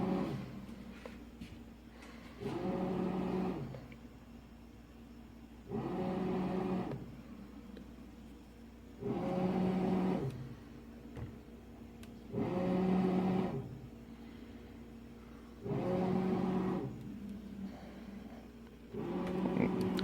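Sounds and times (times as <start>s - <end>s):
refrigerator buzzing hum: 0.0s - 20.0s
refrigerator low running hum: 0.0s - 20.0s.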